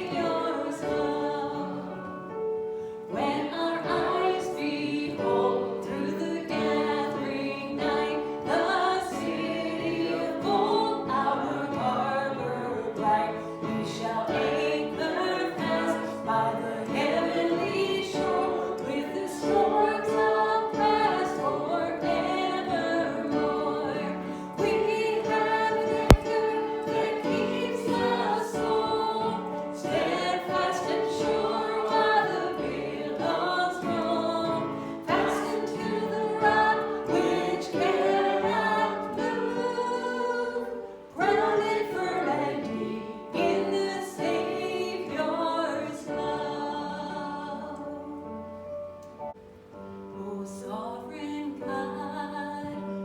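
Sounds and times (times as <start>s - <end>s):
congregation singing a hymn: 0.0s - 49.4s
sharp click: 26.1s - 26.4s.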